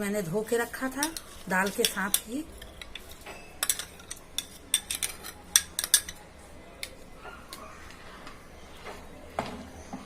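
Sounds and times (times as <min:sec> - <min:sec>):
utensils clinking against a pot: 0:00.7 - 0:06.2.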